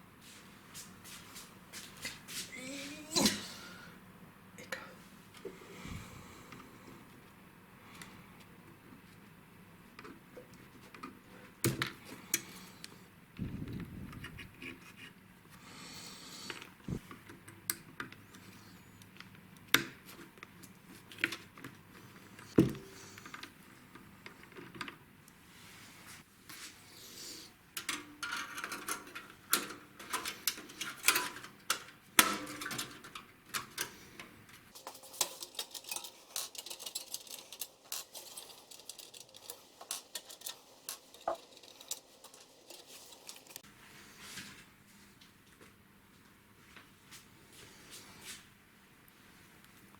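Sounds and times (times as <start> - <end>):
computer hardware clicking and clattering: 34.8 - 43.6.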